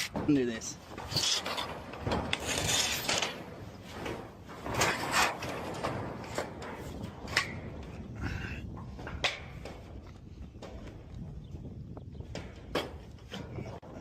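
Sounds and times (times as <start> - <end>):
scraping on roofing materials: 0.0 - 11.1.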